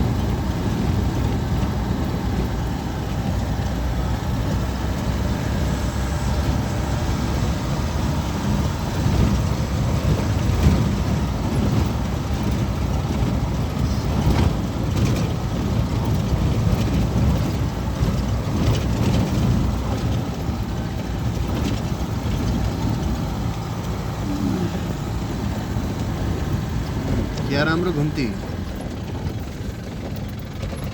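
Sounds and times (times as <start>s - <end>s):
vehicle engine running: 0.0s - 30.9s
knocks and rattles: 8.3s - 30.9s.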